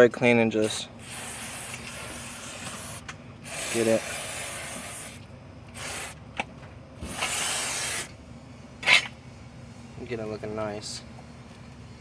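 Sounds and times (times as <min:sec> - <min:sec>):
aerosol spray hissing: 0:00.6 - 0:05.2, 0:05.8 - 0:06.2, 0:07.1 - 0:08.1.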